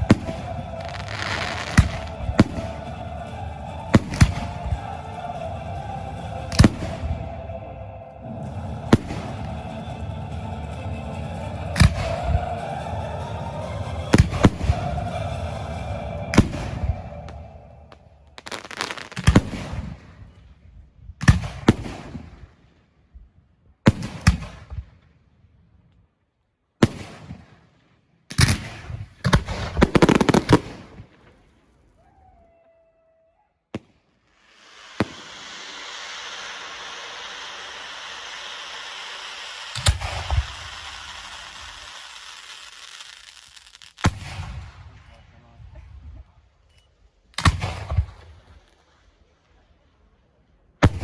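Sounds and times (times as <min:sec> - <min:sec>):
fireworks bangs and crackling: 0:00.0 - 0:20.5, 0:21.1 - 0:22.7, 0:23.8 - 0:25.0, 0:26.8 - 0:31.6, 0:33.7 - 0:46.5, 0:47.3 - 0:49.7
steady hiss: 0:34.3 - 0:44.1.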